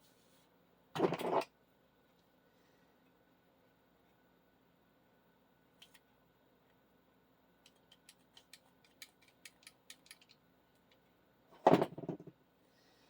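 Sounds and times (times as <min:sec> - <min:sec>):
small parts clicking on workbench: 0:07.6 - 0:11.0.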